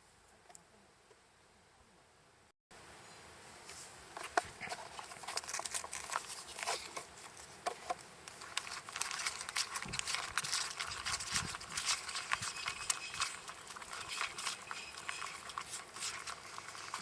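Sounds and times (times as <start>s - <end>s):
campfire crackling and popping: 8.2s - 17.0s.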